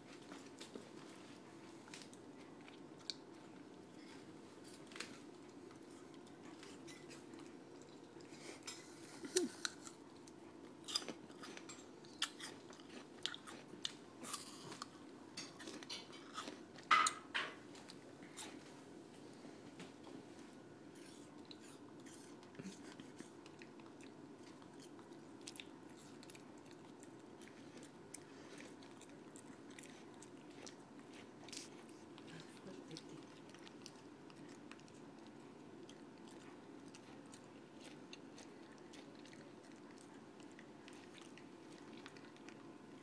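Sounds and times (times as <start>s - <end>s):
steady background hum: 0.0s - 43.0s
puppy crunching apple: 20.9s - 43.0s.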